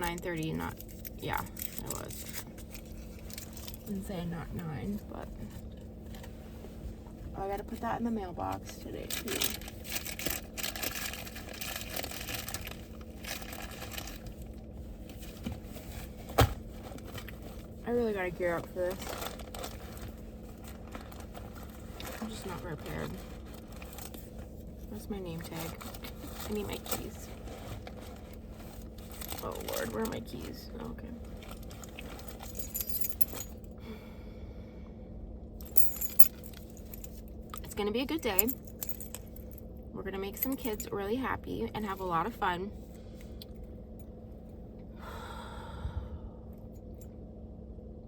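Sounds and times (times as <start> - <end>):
rustling and handling noises: 0.0 - 33.8, 35.6 - 41.1
steady low hum: 0.0 - 48.0
keys jangling: 31.9 - 33.7, 35.6 - 37.2, 38.3 - 39.6.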